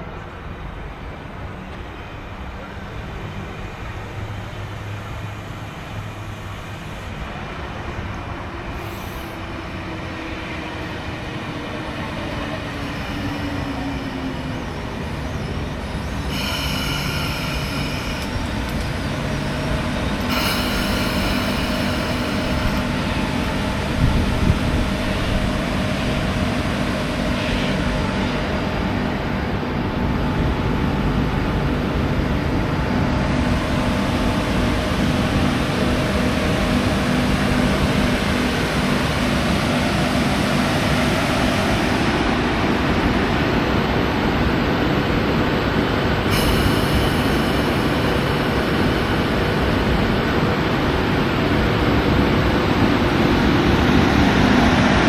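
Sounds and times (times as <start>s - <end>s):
electric train rumble: 0.0s - 55.0s.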